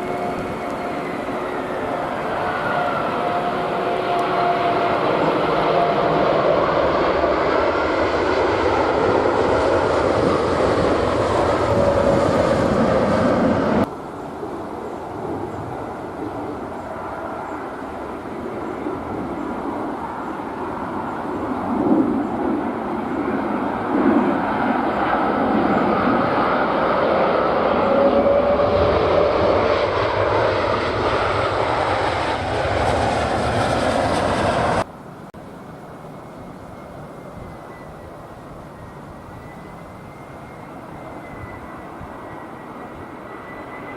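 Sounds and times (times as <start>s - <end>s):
jet engines roaring: 0.0s - 43.9s.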